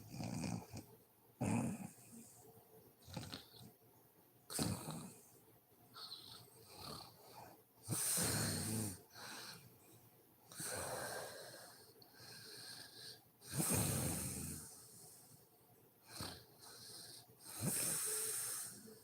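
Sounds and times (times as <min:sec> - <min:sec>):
soft breathing: 0:05.2 - 0:19.0
woman snoring: 0:07.9 - 0:09.0, 0:13.5 - 0:14.8.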